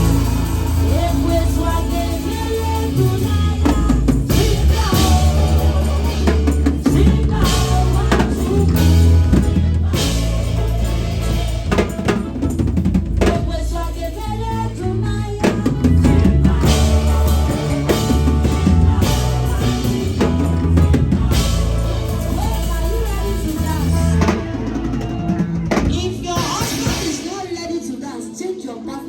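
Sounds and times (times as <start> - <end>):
band with drums and bass: 0.0 - 28.3
people singing: 0.0 - 29.0.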